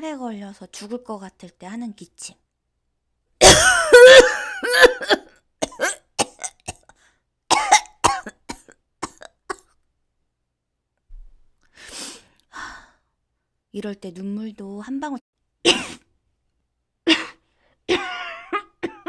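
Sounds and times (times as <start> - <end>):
woman choking cough: 3.4 - 9.8, 15.7 - 16.1, 17.1 - 19.0.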